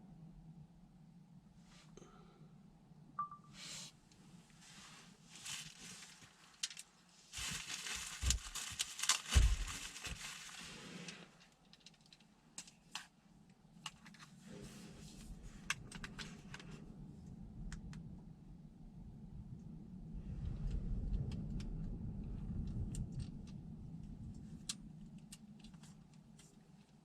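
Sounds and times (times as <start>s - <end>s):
rustling: 4.5s - 13.1s.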